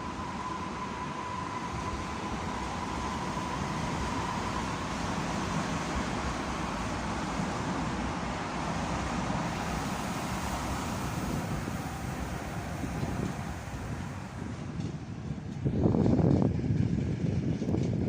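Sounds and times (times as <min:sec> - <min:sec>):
faint train whine: 0:00.0 - 0:18.0
train rumbling past: 0:00.0 - 0:18.0.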